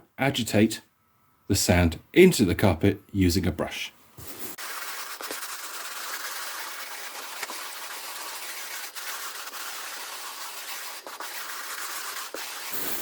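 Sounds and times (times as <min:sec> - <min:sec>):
brush scrubbing carpet: 0:04.2 - 0:13.0.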